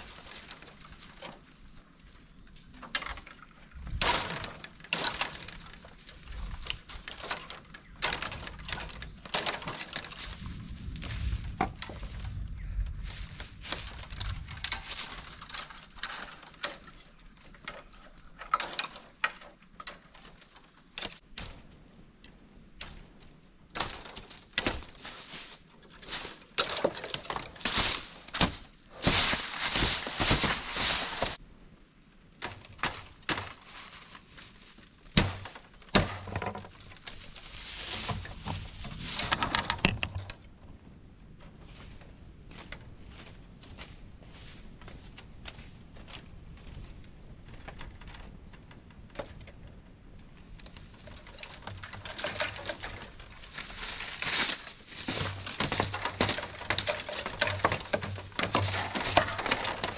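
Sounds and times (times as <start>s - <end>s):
dry leaves rustling and crunching: 0.0s - 21.2s, 23.8s - 31.4s, 32.4s - 40.4s, 50.4s - 59.9s.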